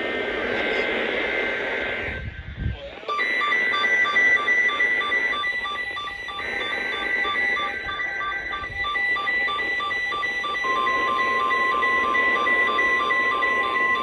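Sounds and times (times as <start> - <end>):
radio static: 0.0 - 14.0
pulsing electronic alarm beeps: 3.1 - 14.0.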